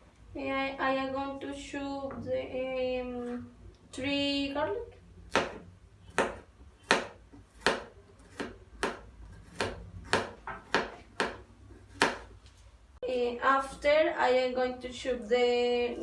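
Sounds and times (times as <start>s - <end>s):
knife chopping on cutting board: 5.3s - 12.3s.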